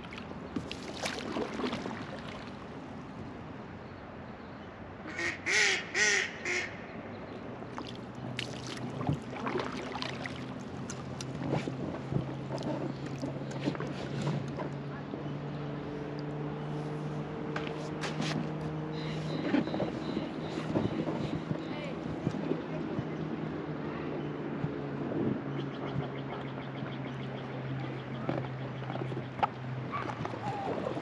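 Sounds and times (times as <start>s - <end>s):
river water rushing: 7.7s - 11.4s.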